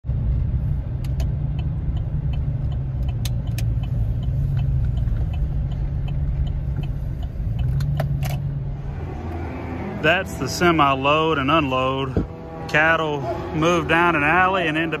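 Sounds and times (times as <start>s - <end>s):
vehicle engine rumbling: 0.0s - 15.0s
faint light ticks: 1.0s - 8.1s.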